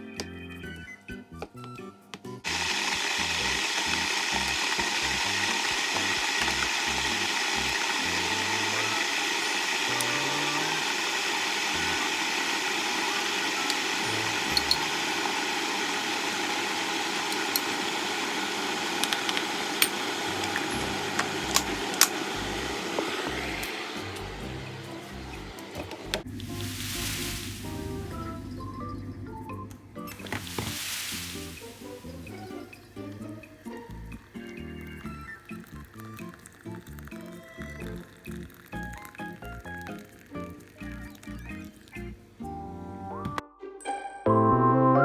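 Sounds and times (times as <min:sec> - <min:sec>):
small electric motor whirring: 0:02.4 - 0:26.3, 0:31.2 - 0:42.1.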